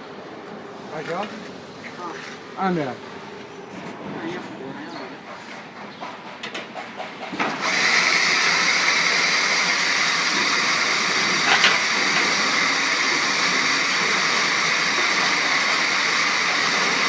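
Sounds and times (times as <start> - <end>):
baling machine running: 4.9 - 17.0.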